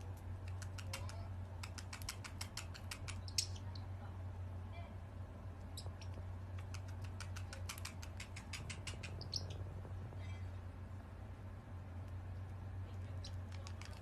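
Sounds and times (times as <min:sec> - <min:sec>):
rapid light sharp clicks: 0:00.0 - 0:03.9, 0:05.5 - 0:10.0, 0:11.9 - 0:14.0
low steady hum: 0:00.0 - 0:14.0.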